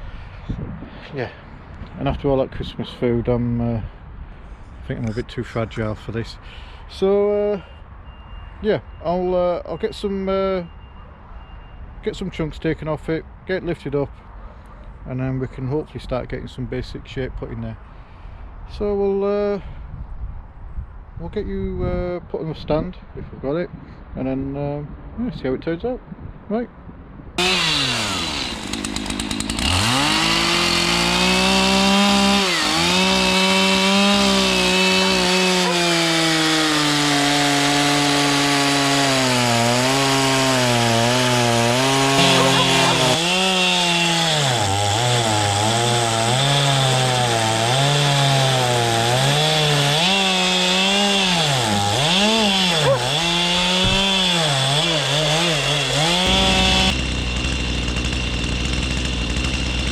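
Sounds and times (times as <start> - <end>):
chainsaw cutting log: 27.4 - 59.9.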